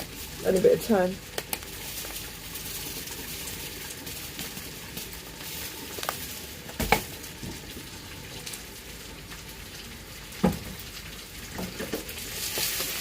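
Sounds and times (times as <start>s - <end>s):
chicken sizzling in a pan: 0.0s - 13.0s.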